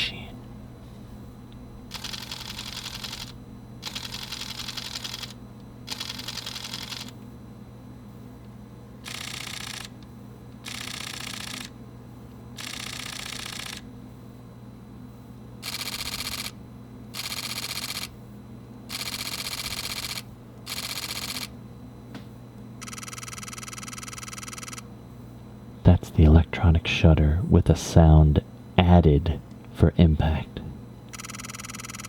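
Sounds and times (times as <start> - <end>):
camera shutter rapid clicking: 1.9 - 7.1, 9.1 - 10.0, 10.7 - 11.7, 12.6 - 13.9, 15.6 - 16.6, 17.2 - 18.1, 18.9 - 21.5, 22.8 - 24.8, 31.2 - 32.0
electronic shutter buzzing: 1.9 - 7.1, 9.1 - 9.9, 10.7 - 11.7, 12.6 - 13.8, 19.0 - 21.5, 22.8 - 24.8, 31.1 - 32.0.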